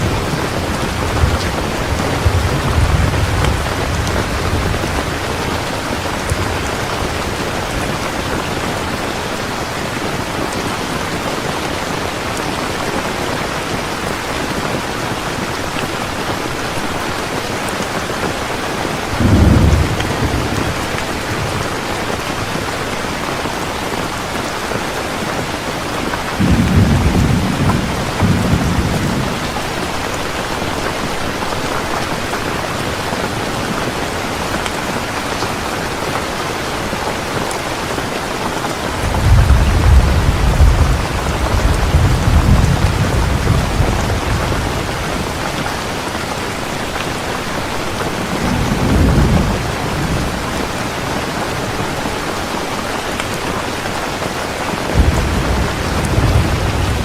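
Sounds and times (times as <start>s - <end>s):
thunder rumbling: 0.0s - 8.7s, 19.1s - 21.8s, 26.4s - 30.3s, 38.8s - 45.8s, 47.8s - 51.2s, 54.9s - 57.0s
heavy rain falling: 0.0s - 57.0s.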